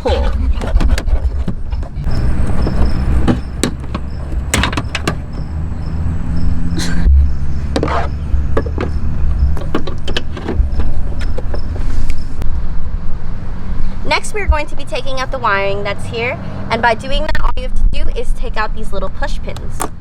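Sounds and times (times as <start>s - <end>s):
steady low rumble: 2.0s - 15.5s.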